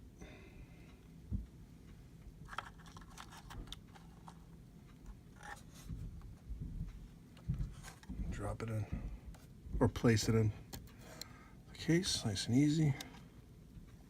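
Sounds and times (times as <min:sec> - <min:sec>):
soft low bumps: 0:05.8 - 0:10.0.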